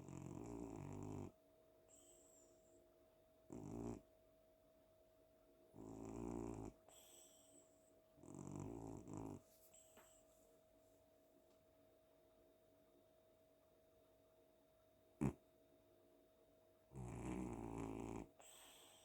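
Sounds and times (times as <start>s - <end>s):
cat snoring: 0.0s - 2.4s, 3.5s - 4.1s, 5.7s - 7.6s, 8.2s - 9.4s, 15.2s - 15.4s, 16.9s - 19.0s
faint steady tone: 0.0s - 19.0s.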